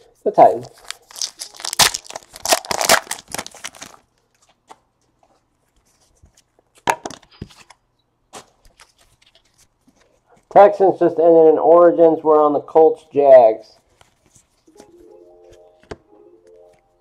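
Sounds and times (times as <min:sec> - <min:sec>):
card packaging crinkling and tearing: 0:00.5 - 0:04.6.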